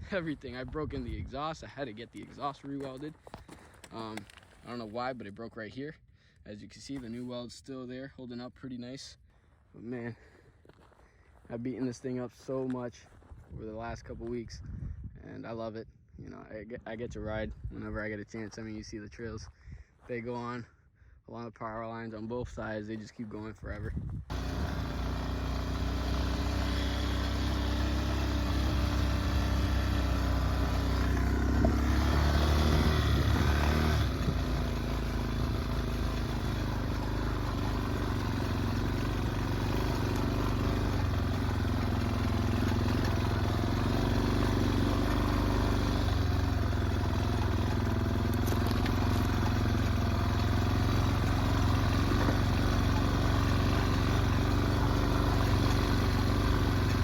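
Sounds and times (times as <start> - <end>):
atv engine revving: 24.3 - 57.0.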